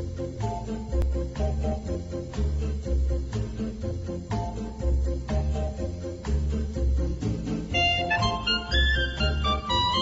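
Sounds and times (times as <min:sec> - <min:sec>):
melody of held notes: 0:07.7 - 0:10.0.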